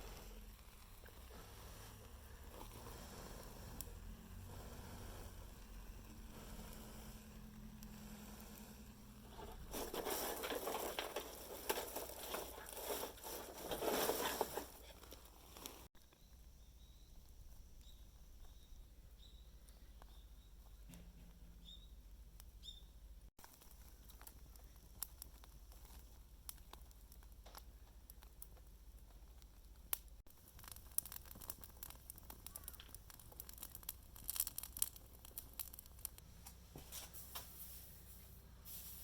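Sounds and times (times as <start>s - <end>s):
dry leaves rustling and crackling: 7.4s - 15.9s, 30.4s - 36.2s.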